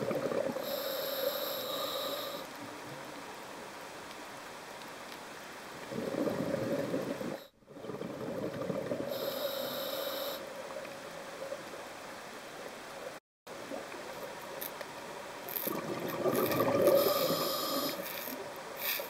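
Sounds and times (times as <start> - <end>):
exhaled bubbles underwater: 0.0 - 0.8, 5.8 - 9.4, 15.7 - 18.0
regulator hiss: 0.6 - 2.5, 9.1 - 10.5, 16.9 - 19.0.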